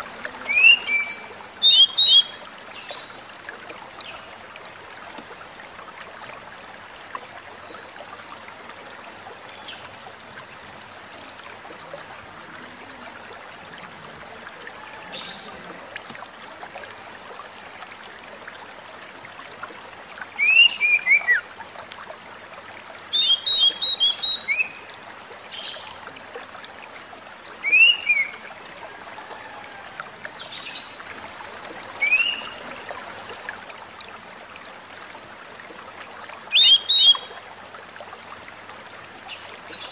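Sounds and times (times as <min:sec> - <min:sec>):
bird whistling calls: 0:00.5 - 0:02.4, 0:20.4 - 0:21.4, 0:23.1 - 0:24.8, 0:27.6 - 0:28.4, 0:32.0 - 0:32.6, 0:36.5 - 0:37.3.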